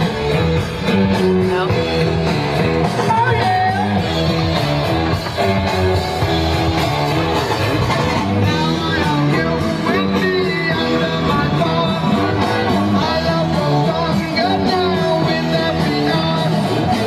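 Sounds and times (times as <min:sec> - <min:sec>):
person singing: 0:00.0 - 0:04.5, 0:08.2 - 0:17.0
rock and roll music: 0:00.0 - 0:17.0.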